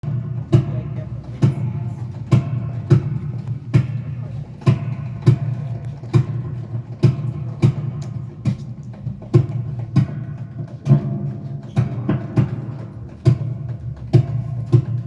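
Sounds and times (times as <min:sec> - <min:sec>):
drums steady beat: 0:00.0 - 0:15.0.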